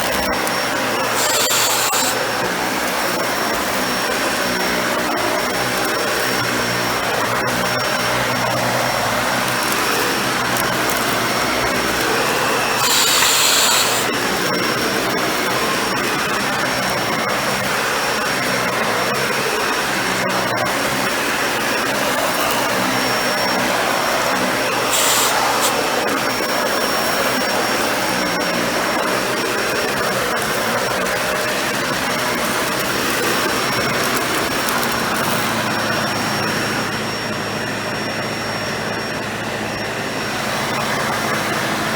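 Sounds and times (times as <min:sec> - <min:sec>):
vacuum cleaner running: 0:00.0 - 0:41.9
vacuum hiss: 0:00.4 - 0:02.4, 0:11.1 - 0:14.2, 0:23.6 - 0:27.3.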